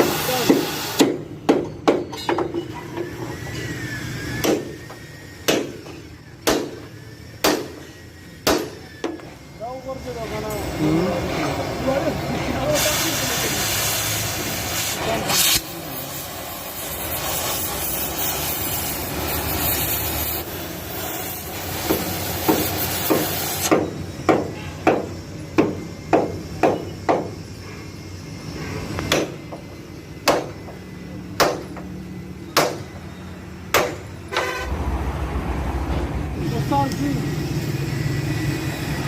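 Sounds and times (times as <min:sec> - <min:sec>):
hammer blows: 0:00.0 - 0:09.4, 0:21.7 - 0:30.8
steady hiss: 0:12.6 - 0:23.7.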